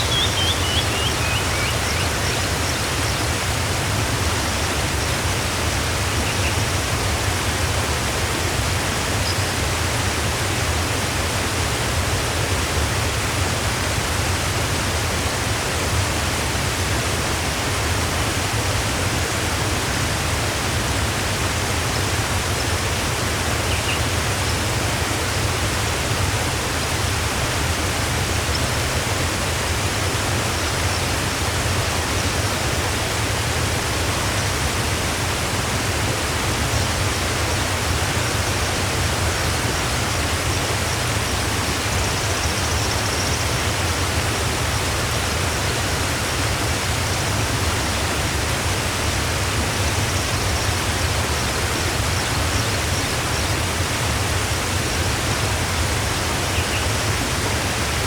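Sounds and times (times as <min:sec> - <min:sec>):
faint high bird chirps: 0:00.0 - 0:03.2
waterfall rushing: 0:00.0 - 0:58.0.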